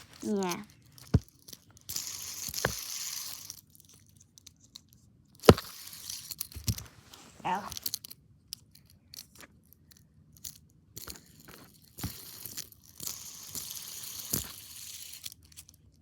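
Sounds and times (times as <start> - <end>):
fidget spinner spinning hiss: 1.9 - 3.5, 12.0 - 15.3.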